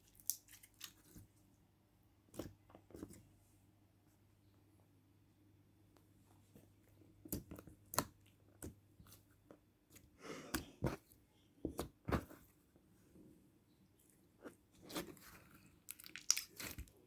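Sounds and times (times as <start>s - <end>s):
slime squelch: 14.0s - 17.0s
slime popping and clicking: 15.9s - 16.8s.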